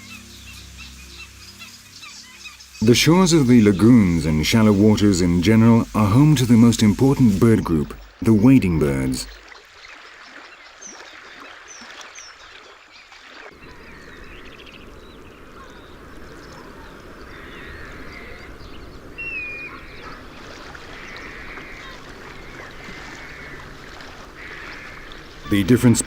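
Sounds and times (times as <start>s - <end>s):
water trickling: 0.0s - 26.0s
waterbirds calling: 0.0s - 26.0s
steady low rush: 2.6s - 9.4s.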